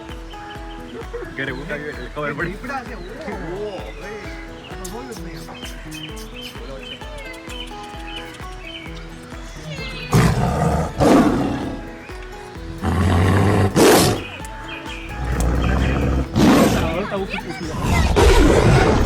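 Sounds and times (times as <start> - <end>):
background music: 0.0 - 19.0
big cat roaring: 15.2 - 17.0, 17.7 - 19.0.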